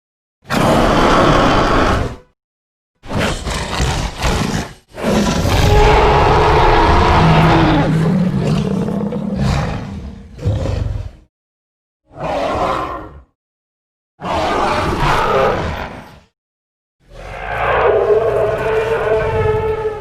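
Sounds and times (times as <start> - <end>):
dinosaur roar: 0.5 - 2.2, 3.1 - 11.3, 12.1 - 13.3, 14.2 - 16.1, 17.1 - 20.0.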